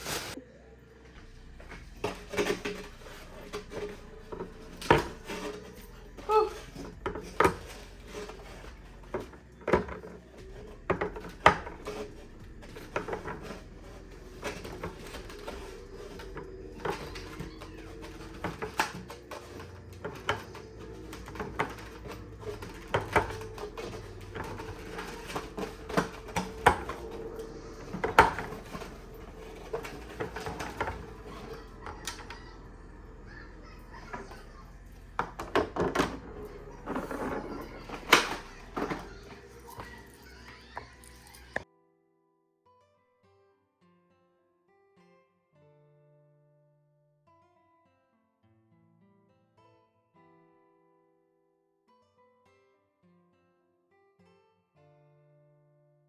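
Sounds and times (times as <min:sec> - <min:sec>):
plastic containers knocking on shelves: 0:02.0 - 0:40.2.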